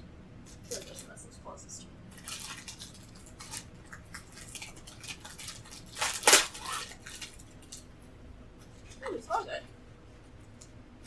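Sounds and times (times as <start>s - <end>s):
plastic wrapper crinkling: 2.1s - 7.9s
plastic wrapper tearing: 2.2s - 7.9s.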